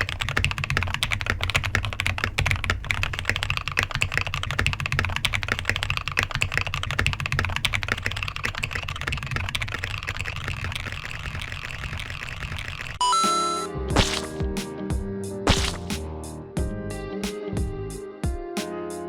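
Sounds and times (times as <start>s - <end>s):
fast mechanical keyboard typing: 0.0s - 13.0s.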